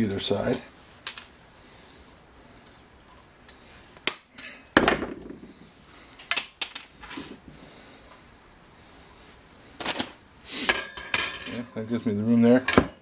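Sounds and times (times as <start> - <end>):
metal wire rack clinking: 4.4 - 4.7.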